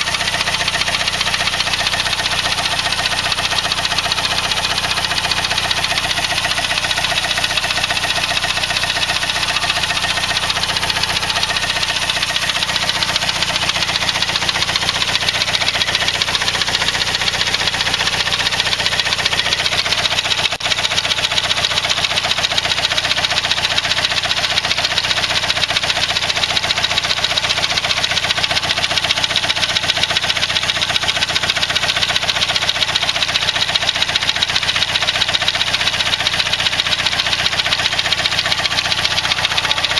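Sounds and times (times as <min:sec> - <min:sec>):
car engine idling with ticking clatter: 0:00.0 - 0:39.9.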